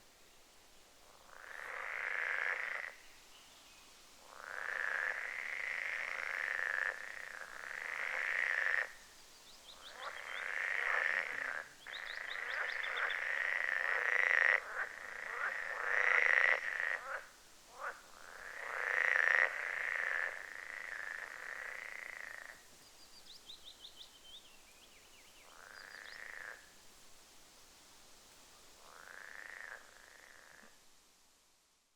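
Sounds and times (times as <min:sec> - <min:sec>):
frogs trilling: 0:01.2 - 0:03.0, 0:04.3 - 0:09.0, 0:09.7 - 0:22.6, 0:25.4 - 0:26.6, 0:28.9 - 0:30.6.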